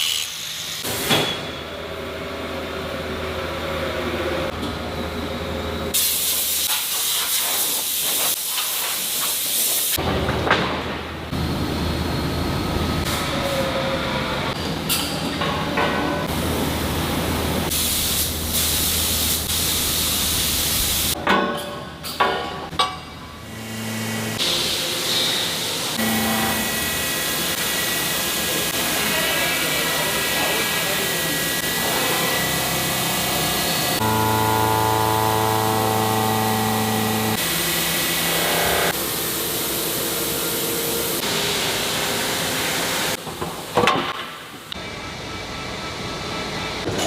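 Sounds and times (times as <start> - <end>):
workshop hiss: 0.0 - 1.9, 5.5 - 10.3, 16.0 - 21.2, 23.6 - 47.0
factory machinery humming: 0.0 - 6.7, 9.9 - 47.0
hiss: 6.0 - 10.0, 17.7 - 21.2.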